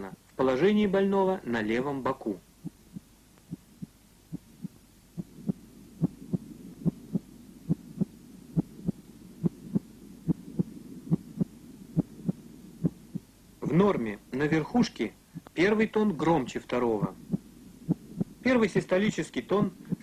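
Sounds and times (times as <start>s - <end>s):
low steady hum: 0.0s - 20.0s
heartbeat lub-dub: 2.6s - 13.4s, 17.2s - 18.4s.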